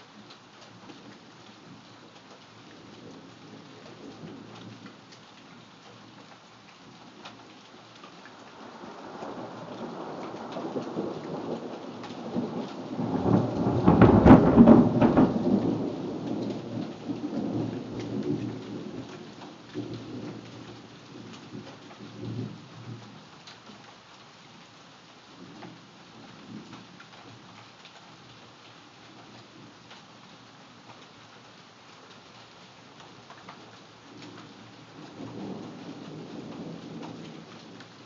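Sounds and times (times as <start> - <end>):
steady rain: 0.0 - 38.0
thunder rolling: 9.4 - 19.0.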